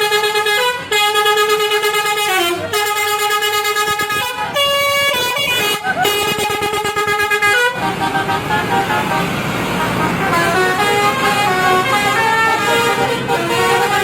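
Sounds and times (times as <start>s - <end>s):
multi-tone musical air horn: 0.0s - 14.0s.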